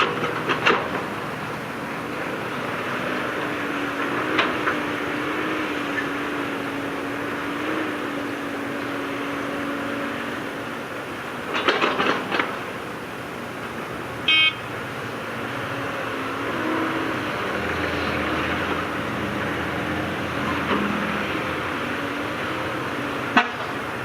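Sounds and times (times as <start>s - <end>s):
diesel engines running: 0.0s - 24.0s
short horn toot: 14.3s - 14.6s.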